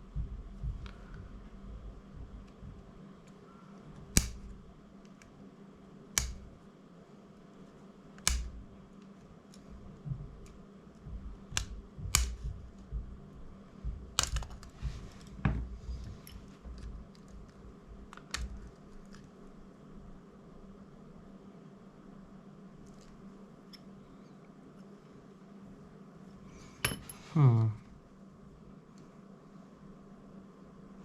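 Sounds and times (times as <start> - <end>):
hand tools clicking on plastic: 10.3 - 12.8, 13.9 - 15.3.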